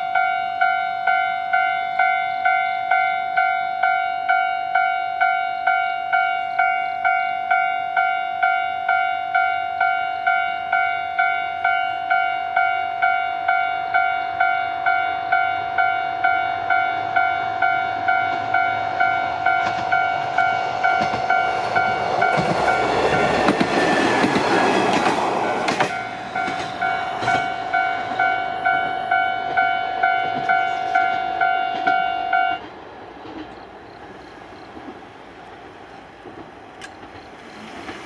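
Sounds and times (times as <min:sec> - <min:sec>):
railroad crossing bell chiming: 0:00.0 - 0:32.6
train wheels rumbling on rails: 0:15.4 - 0:38.0.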